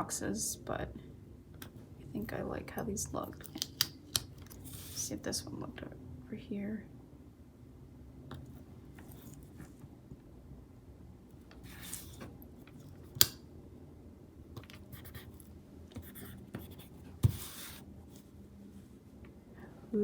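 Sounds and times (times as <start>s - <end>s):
paper scratching and rustling: 9.0s - 9.8s, 11.6s - 12.9s.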